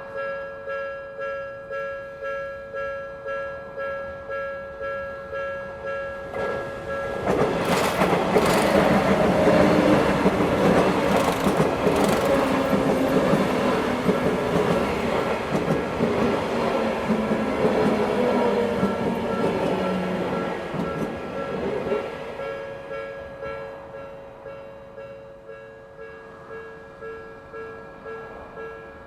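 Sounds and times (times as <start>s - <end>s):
train passing: 3.7s - 29.0s
wheel clacks: 7.2s - 16.4s.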